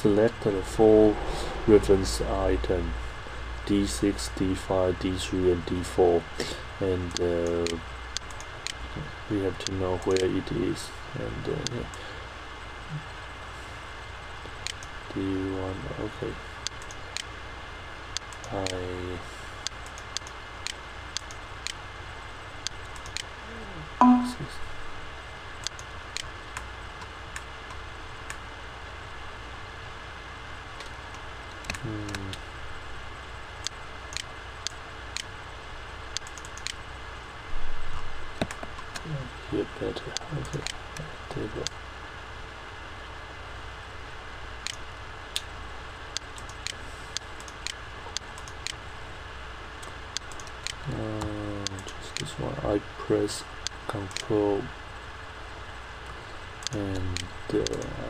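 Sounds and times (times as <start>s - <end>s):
electrical hum and hiss: 0.0s - 58.0s
faint falling tone: 0.5s - 3.6s, 23.5s - 24.6s
light sharp ticks: 7.1s - 8.8s, 18.1s - 18.8s, 19.6s - 21.8s, 22.6s - 23.3s, 33.6s - 35.3s, 36.1s - 36.8s, 49.8s - 52.3s, 53.6s - 54.3s, 56.0s - 57.9s
computer mouse clicking: 18.2s - 18.8s, 19.6s - 21.8s, 22.6s - 23.3s, 25.6s - 28.4s, 36.1s - 36.8s, 38.4s - 39.1s, 40.2s - 41.8s, 46.2s - 48.8s, 49.8s - 52.3s, 53.6s - 54.3s, 56.6s - 57.9s
brief pitched sound: 24.0s - 24.6s.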